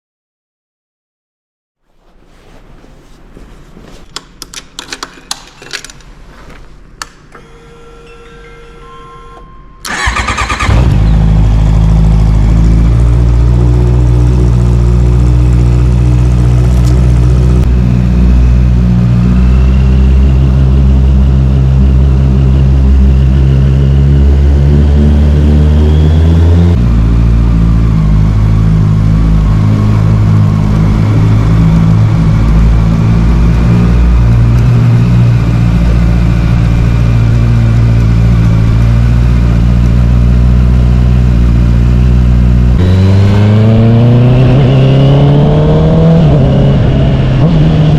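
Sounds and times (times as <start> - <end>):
motorcycle engine starting and idling: 9.8 - 24.4.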